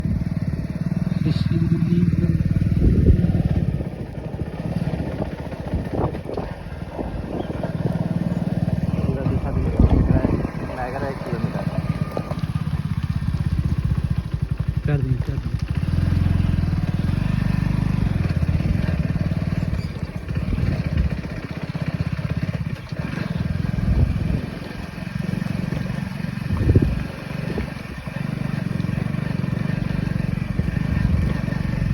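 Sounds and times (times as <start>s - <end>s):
engine pulsing rumble: 0.0s - 31.9s.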